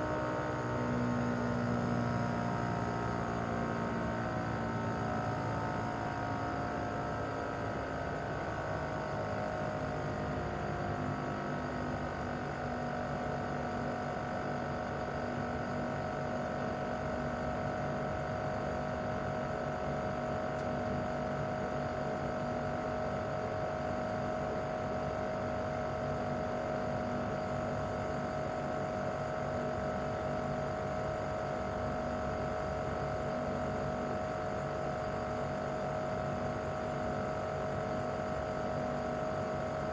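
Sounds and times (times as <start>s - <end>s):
air conditioner unit humming: 0.0s - 39.9s.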